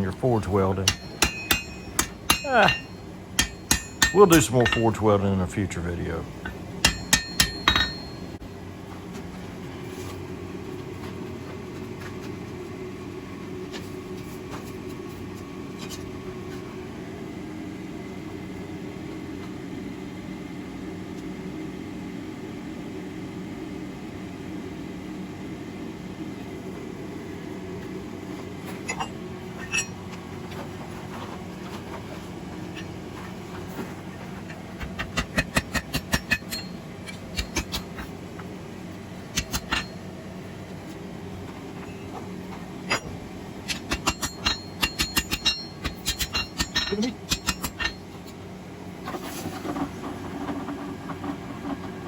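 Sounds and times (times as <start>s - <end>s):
hammer striking steel bar: 0.8s - 5.0s, 6.8s - 8.2s, 35.1s - 37.9s, 39.4s - 39.9s, 43.7s - 48.0s.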